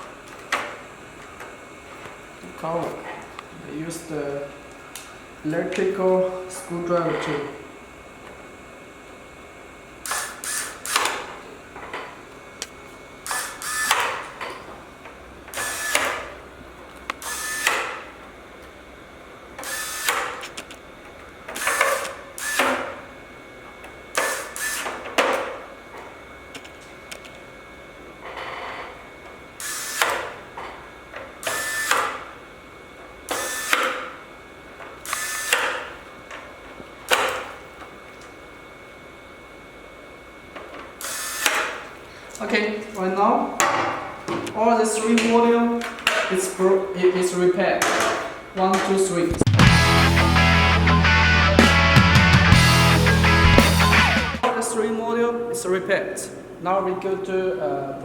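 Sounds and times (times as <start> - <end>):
electric screwdriver whirring: 10.0 - 11.2, 13.2 - 14.2, 15.5 - 16.3, 17.1 - 18.0, 19.6 - 20.8, 21.5 - 22.8, 24.2 - 25.0, 35.1 - 35.7.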